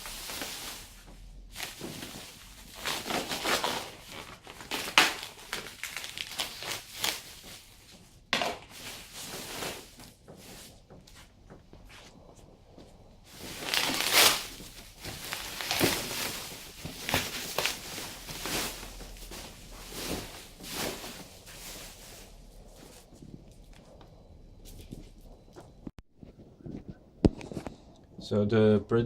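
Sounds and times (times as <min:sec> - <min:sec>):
packaging crumpling and tearing: 0:01.6 - 0:07.5, 0:13.4 - 0:21.0.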